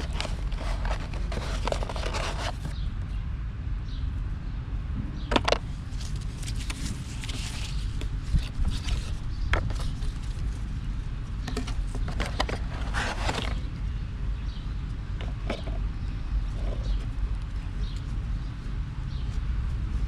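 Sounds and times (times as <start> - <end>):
handling clicks and scrapes: 0.0 - 2.8, 5.3 - 10.6, 11.4 - 13.8, 14.5 - 18.2
steady low rumble: 0.0 - 20.0.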